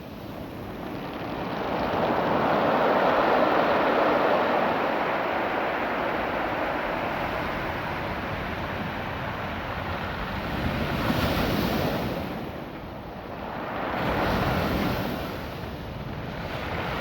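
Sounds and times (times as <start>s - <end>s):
surf washing over stones: 13.3s - 17.0s.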